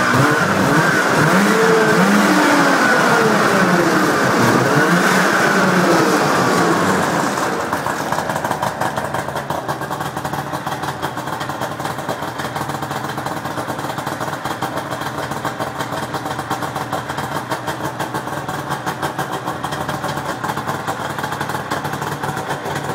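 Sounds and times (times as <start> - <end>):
snowmobile engine revving down: 0.0 - 10.3
snowmobile engine idling: 0.0 - 22.9.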